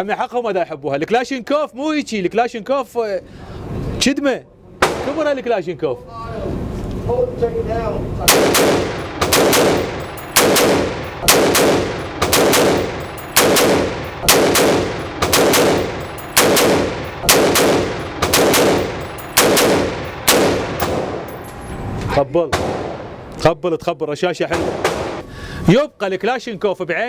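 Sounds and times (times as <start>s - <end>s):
rifle shots with echo: 4.8s - 5.4s, 8.3s - 21.4s, 22.5s - 23.3s, 24.5s - 25.3s.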